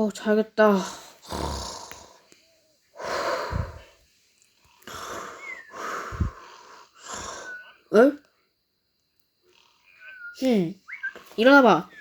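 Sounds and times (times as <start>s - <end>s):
cartoon pig snoring: 0.8s - 2.2s, 7.0s - 7.5s.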